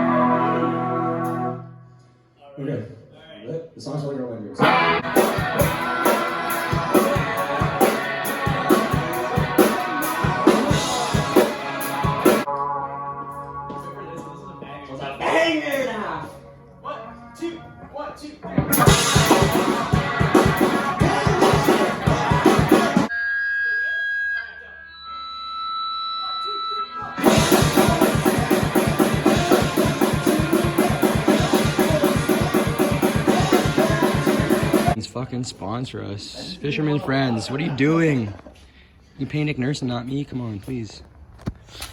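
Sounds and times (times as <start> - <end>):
rock song: 0.0 - 1.6, 4.6 - 12.5, 18.4 - 23.1, 27.2 - 35.0
electric guitar: 0.0 - 2.0, 4.6 - 13.9, 18.4 - 23.1, 27.0 - 35.0
drum kit beat: 4.6 - 12.5, 18.6 - 23.1, 27.2 - 35.0.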